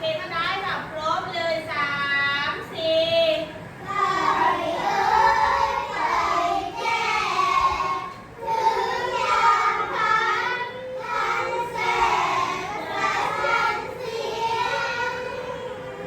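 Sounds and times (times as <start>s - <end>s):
child chanting verse: 3.9s - 16.0s.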